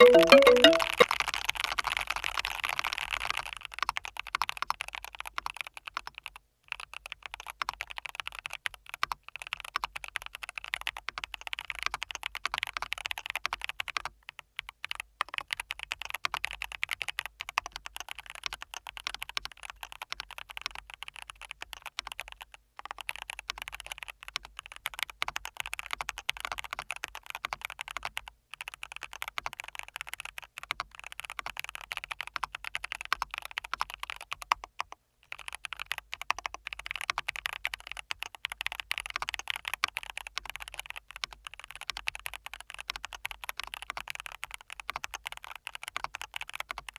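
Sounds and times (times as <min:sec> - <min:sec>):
mechanical keyboard typing: 0:00.0 - 0:46.9.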